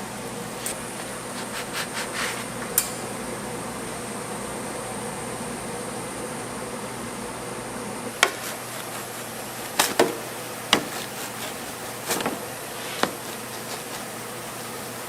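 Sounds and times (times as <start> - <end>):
steady background hiss: 0.0 - 15.0
kitchen knocks and clicks: 8.2 - 8.5, 9.7 - 13.2.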